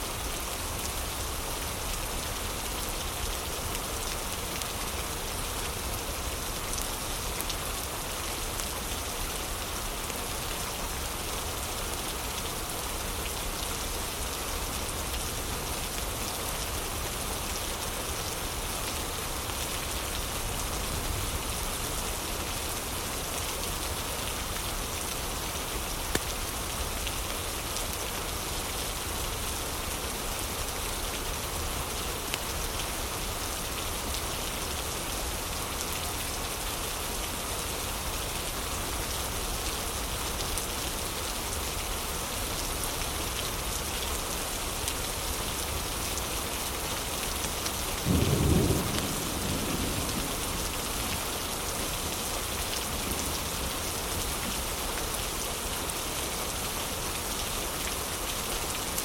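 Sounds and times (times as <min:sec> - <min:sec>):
heavy rain: 0:00.0 - 0:59.0
deep thunder rumble: 0:48.1 - 0:50.9.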